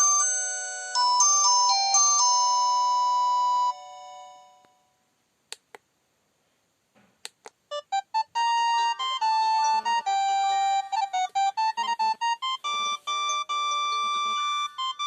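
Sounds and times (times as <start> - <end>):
polyphonic synth ringtone: 7.7 - 15.0.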